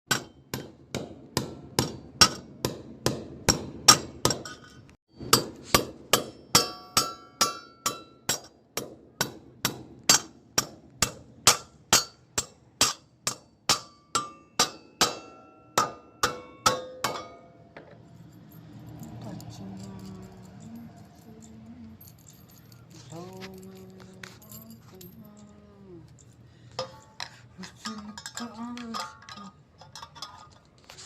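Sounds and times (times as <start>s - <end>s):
hammer blows with metallic ring: 0.1s - 18.2s, 23.5s - 29.5s.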